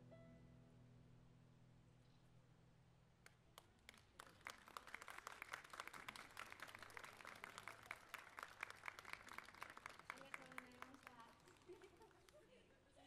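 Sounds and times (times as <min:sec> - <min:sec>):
audience clapping: 0:03.2 - 0:12.4.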